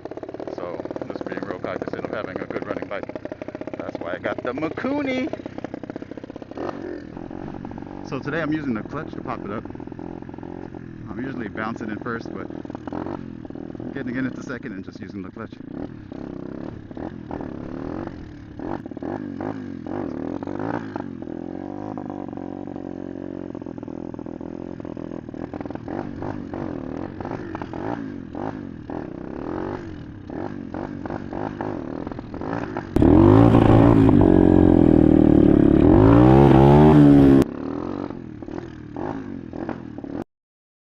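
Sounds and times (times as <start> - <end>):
motorbike engine revving: 0.0 - 40.2.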